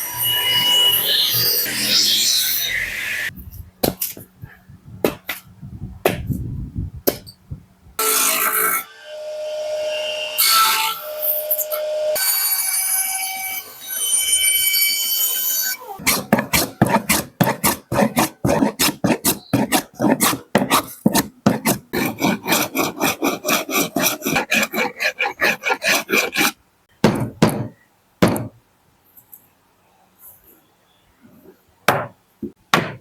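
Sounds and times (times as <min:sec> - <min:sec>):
rasp filing wood: 0:16.0 - 0:26.6.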